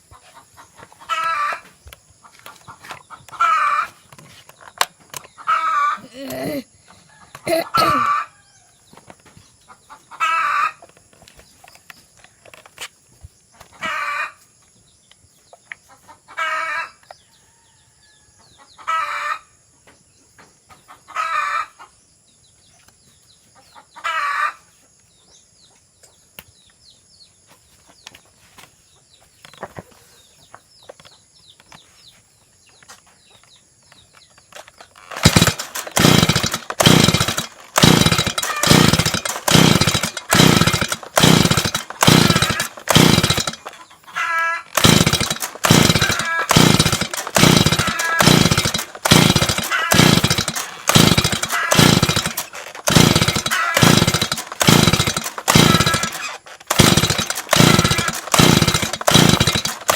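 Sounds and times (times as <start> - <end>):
chainsaw starter cord pulls: 2.4 - 6.6, 7.3 - 8.1, 34.2 - 59.9
chainsaw engine running: 5.0 - 6.7, 7.3 - 8.2, 34.6 - 59.9.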